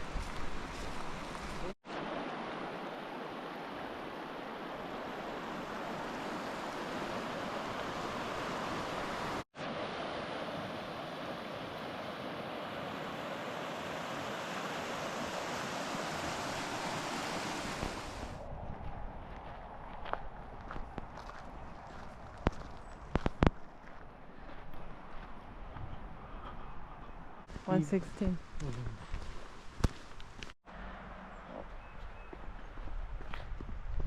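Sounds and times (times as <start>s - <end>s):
water rushing: 0.0s - 18.4s.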